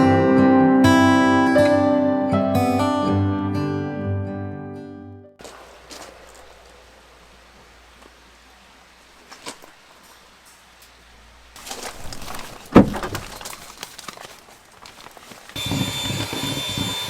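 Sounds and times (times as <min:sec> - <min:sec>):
faint steady hiss: 0:05.4 - 0:16.2
rustling and knocking: 0:11.6 - 0:16.5.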